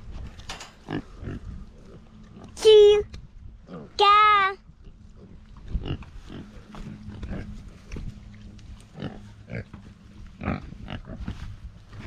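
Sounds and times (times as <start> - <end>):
pigs grunting: 0.8 - 2.6, 4.8 - 8.1, 8.8 - 11.5.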